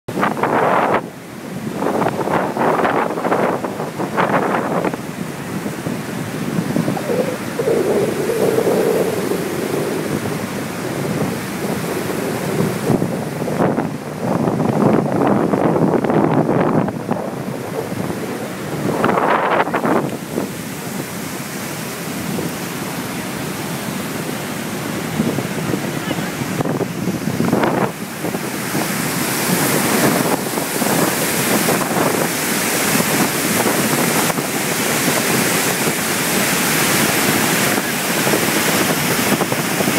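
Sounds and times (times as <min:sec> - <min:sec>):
heavy rain: 0:00.1 - 0:39.9
river water rushing: 0:00.1 - 0:39.9
wind buffeting microphone: 0:00.1 - 0:39.9
low hum: 0:06.8 - 0:13.6.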